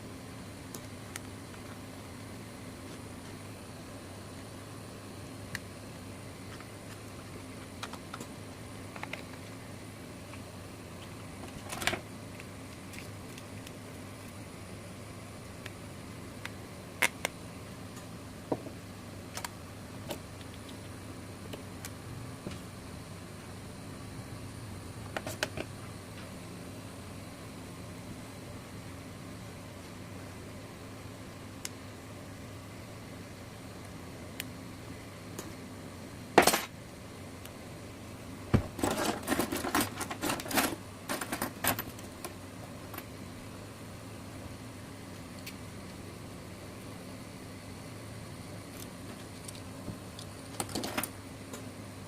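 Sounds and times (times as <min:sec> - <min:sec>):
steady low hum: 0:00.0 - 0:52.0
tools clicking and clattering: 0:38.8 - 0:42.0.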